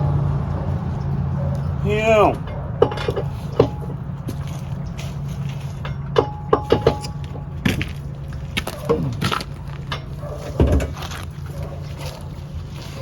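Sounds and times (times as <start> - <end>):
sharp metallic knocks and clinks: 2.2 - 4.4, 5.8 - 7.9.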